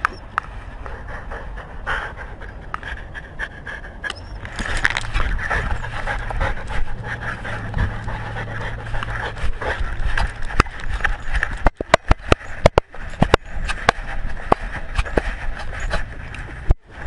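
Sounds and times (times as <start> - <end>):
dog panting: 0.0 - 17.0
sharp clicks and knocks: 8.9 - 16.8.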